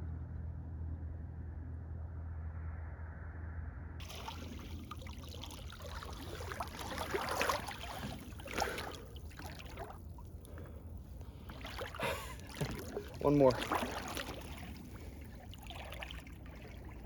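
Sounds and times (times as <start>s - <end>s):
water sloshing and trickling: 4.0s - 17.0s
water splashes: 4.0s - 17.0s.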